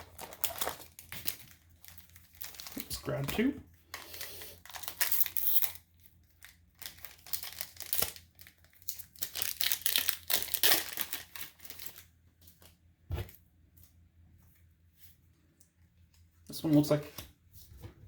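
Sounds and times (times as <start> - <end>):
foil wrappers crinkling and tearing: 0.0 - 12.8.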